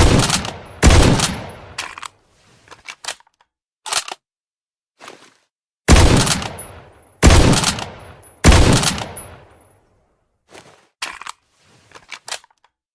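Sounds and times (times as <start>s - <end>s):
rifle shots with echo: 0.0s - 1.8s, 5.9s - 9.5s.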